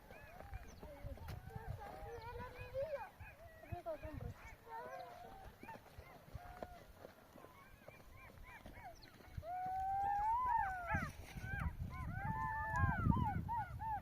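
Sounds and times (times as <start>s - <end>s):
jackals yipping: 0.0s - 14.0s
long wailing howl: 9.4s - 14.0s.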